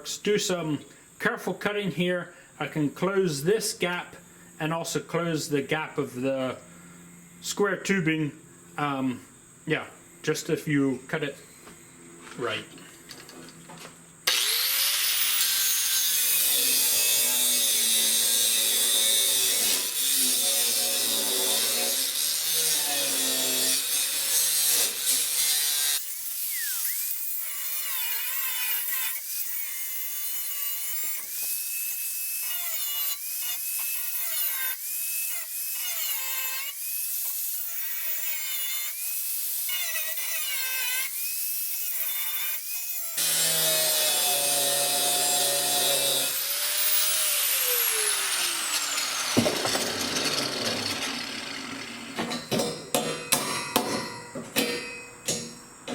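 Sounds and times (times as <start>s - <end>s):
electric saw cutting metal tubing: 14.2s - 52.5s.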